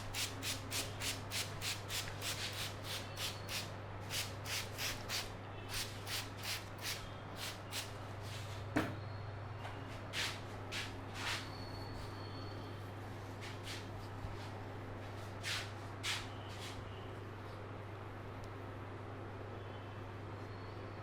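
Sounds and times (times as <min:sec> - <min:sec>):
hands rubbing scalp and hair: 0:13.3 - 0:14.6.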